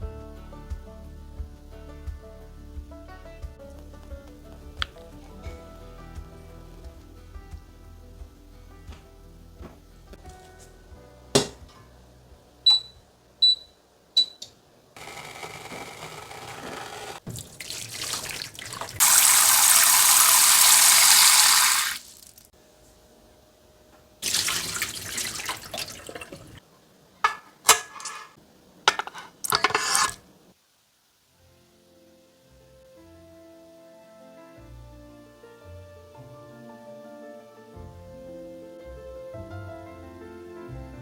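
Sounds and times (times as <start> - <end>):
tap water running into sink: 16.8 - 22.5, 24.2 - 26.6.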